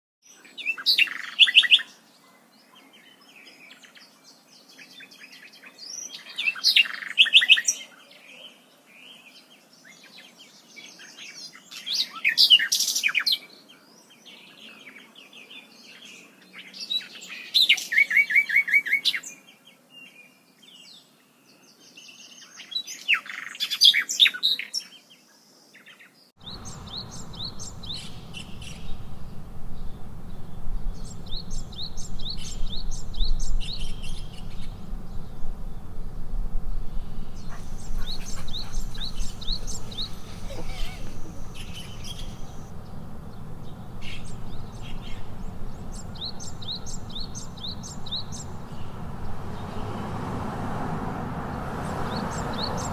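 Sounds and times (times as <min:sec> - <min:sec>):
songbirds chirping and trilling: 0:37.5 - 0:42.7.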